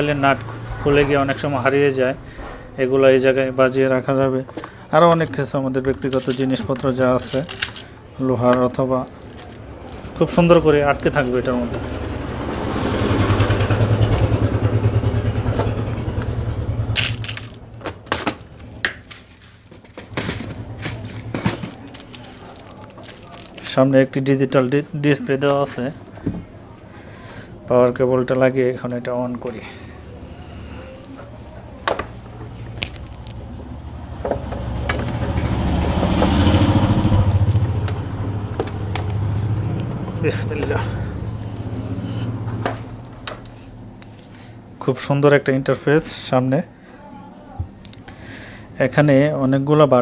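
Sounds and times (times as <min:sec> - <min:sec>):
vehicle engine running: 0:00.0 - 0:04.9, 0:09.1 - 0:23.7, 0:29.3 - 0:44.5.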